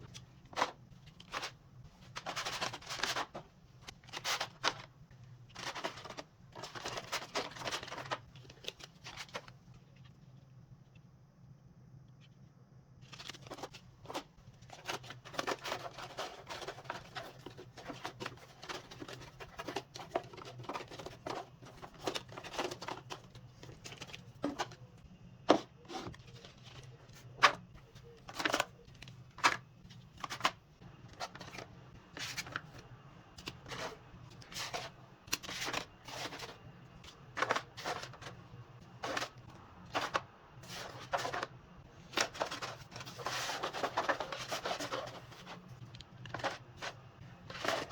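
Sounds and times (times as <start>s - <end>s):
packaging rustling and crinkling: 0.0s - 9.5s, 13.0s - 24.9s, 33.4s - 47.9s.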